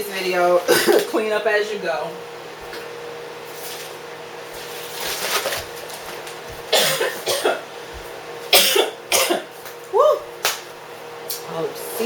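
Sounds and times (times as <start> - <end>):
person coughing: 0.7 - 1.1, 6.7 - 7.7, 8.5 - 9.5.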